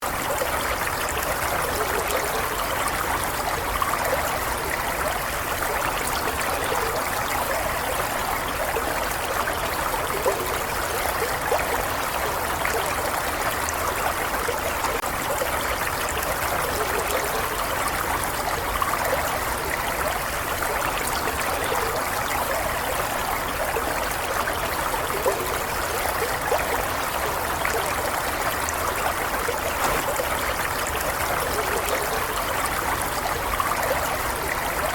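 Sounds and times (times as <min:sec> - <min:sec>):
stream of water running: 0:00.0 - 0:34.9
small water splashes: 0:28.2 - 0:32.3.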